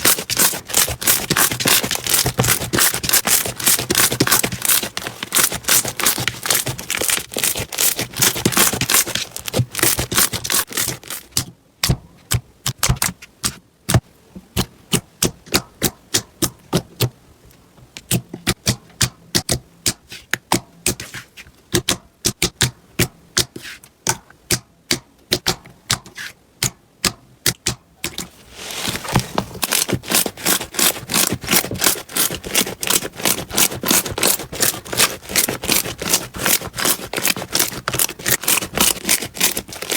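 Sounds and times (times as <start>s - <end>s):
slime popping and crackling: 0.0s - 11.2s.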